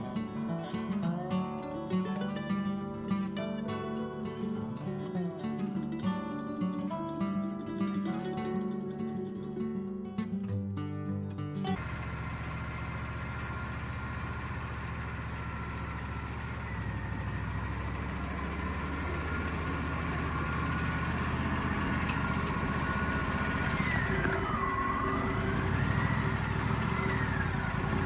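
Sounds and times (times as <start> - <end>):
band sawmill running: 11.8 - 28.0
thin saw whine: 11.8 - 28.0.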